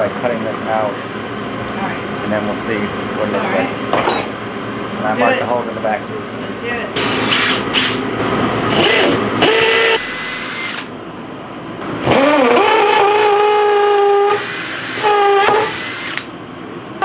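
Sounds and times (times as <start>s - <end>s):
power tool motor whine: 7.0s - 8.1s, 8.7s - 10.9s, 12.0s - 16.3s.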